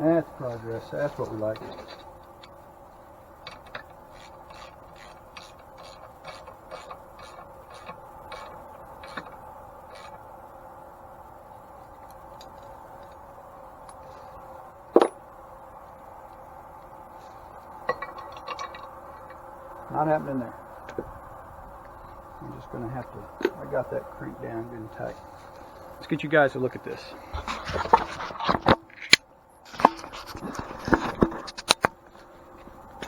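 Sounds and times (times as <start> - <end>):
ratchet wrench clicking: 3.4 - 10.2.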